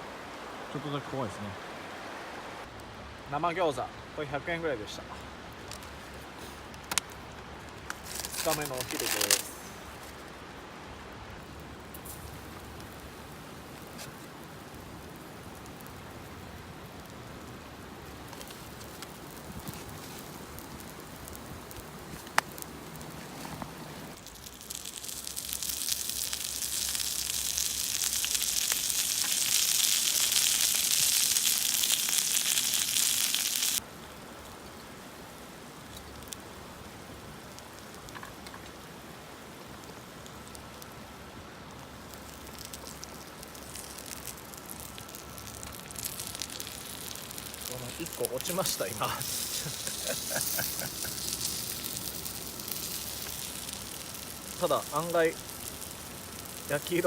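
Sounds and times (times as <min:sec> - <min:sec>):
dumplings sizzling in a pan: 0:08.0 - 0:10.0, 0:24.1 - 0:57.0.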